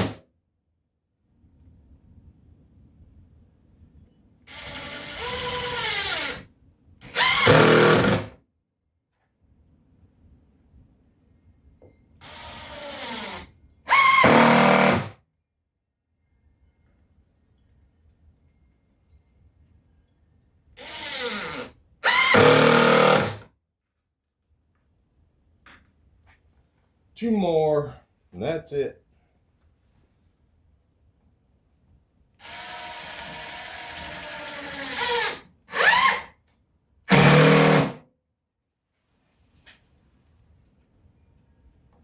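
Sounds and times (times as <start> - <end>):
power drill driving screws: 4.5 - 6.4, 7.0 - 8.3, 12.2 - 15.2, 20.8 - 23.4, 32.4 - 36.3, 37.1 - 38.0.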